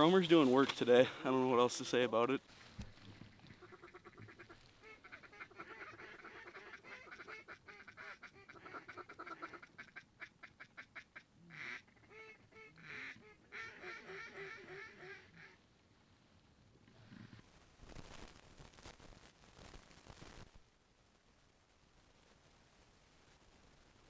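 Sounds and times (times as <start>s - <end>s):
ducks quacking: 3.4s - 15.6s.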